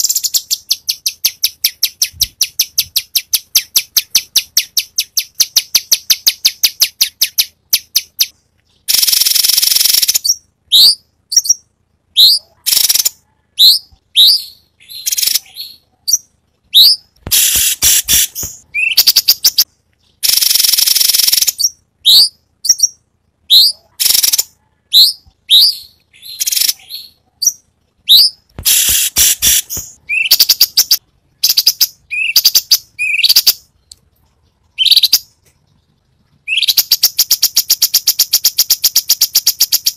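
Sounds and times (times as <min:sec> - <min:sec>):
songbird singing varied song: 0:00.0 - 0:34.0, 0:34.6 - 0:39.9.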